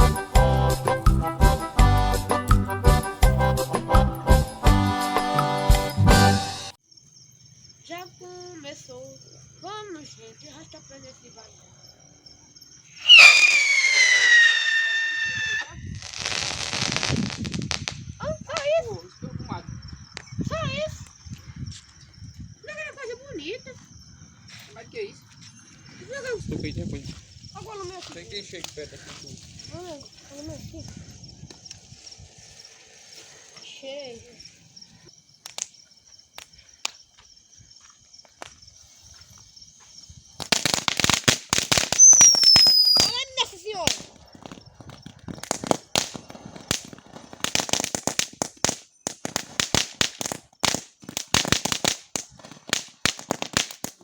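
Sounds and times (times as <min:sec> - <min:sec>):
firework whistle falling: 0:12.9 - 0:16.9, 0:42.0 - 0:43.2
firework crackling pops: 0:13.0 - 0:18.7, 0:35.4 - 0:35.8, 0:40.4 - 0:54.0.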